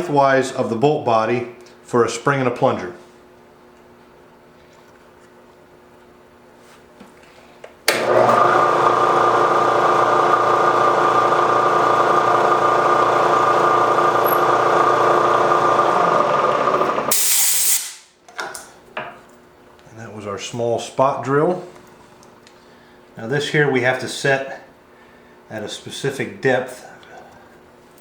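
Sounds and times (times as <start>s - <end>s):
milling machine running: 7.9s - 17.3s
short burst of hiss: 17.1s - 18.1s.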